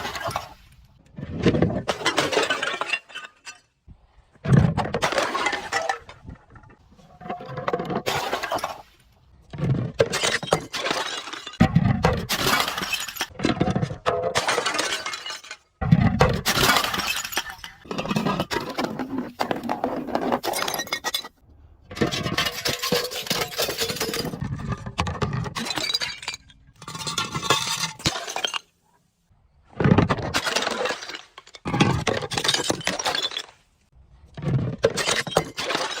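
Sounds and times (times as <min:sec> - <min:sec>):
glass bottles being crushed: 0:01.6 - 0:03.7, 0:09.6 - 0:28.8, 0:29.9 - 0:33.6, 0:34.4 - 0:36.0.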